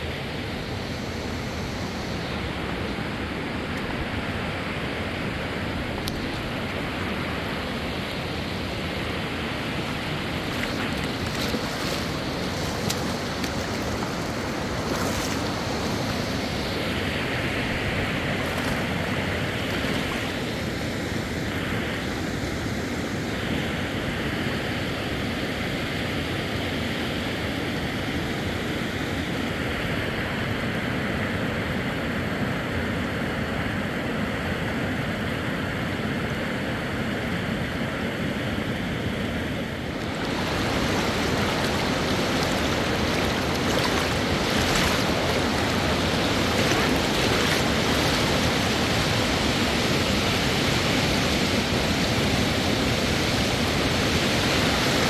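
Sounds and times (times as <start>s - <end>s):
river rushing: 0.0s - 21.6s, 39.5s - 55.0s.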